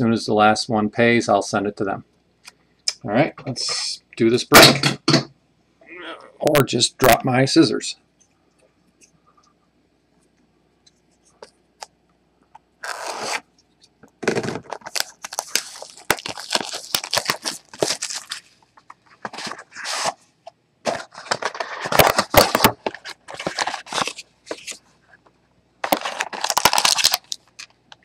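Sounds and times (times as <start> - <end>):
plastic wrapping tearing and crinkling: 12.8 - 13.5, 14.2 - 18.6, 25.8 - 27.8.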